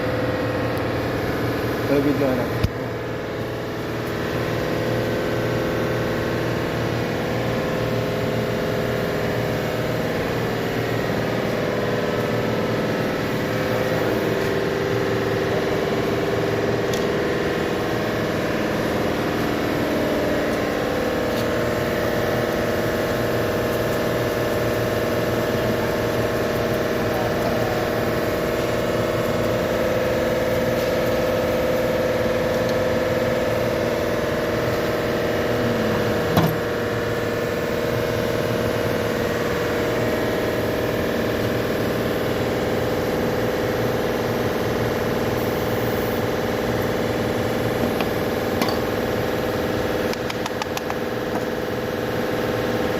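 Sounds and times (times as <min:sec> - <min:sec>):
car engine idling: 0:07.5 - 0:39.8.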